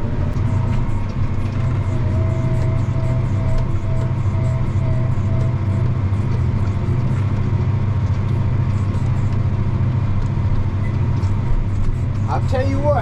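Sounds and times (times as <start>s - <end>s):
short pulsing tone: 0.0s - 7.8s
tractor engine under load: 0.0s - 13.0s.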